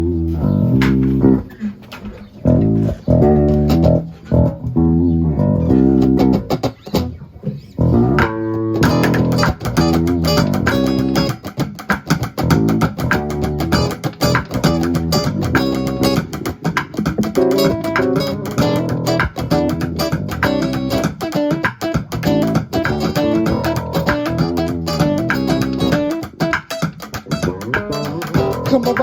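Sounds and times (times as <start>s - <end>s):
live band playing: 13.8s - 29.0s.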